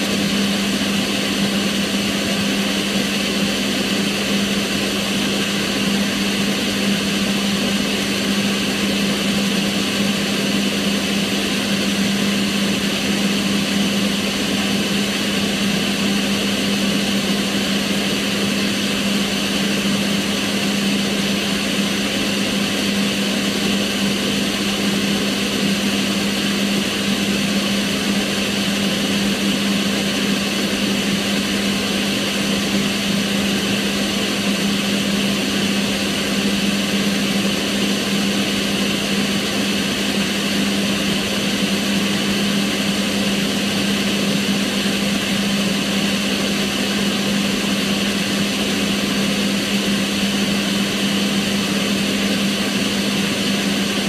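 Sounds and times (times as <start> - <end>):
extractor fan running: 0.0 - 54.0.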